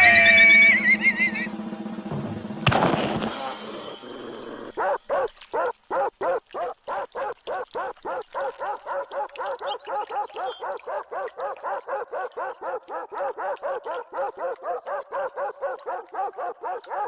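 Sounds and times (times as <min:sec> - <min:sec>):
cartoon dog barking: 0:04.2 - 0:17.0.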